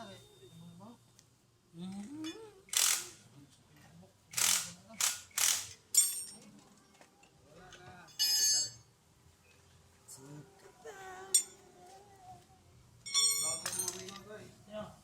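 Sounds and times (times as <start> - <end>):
ringing metallic clinks: 5.9 - 6.5, 8.1 - 8.9, 11.3 - 11.6, 13.0 - 14.3.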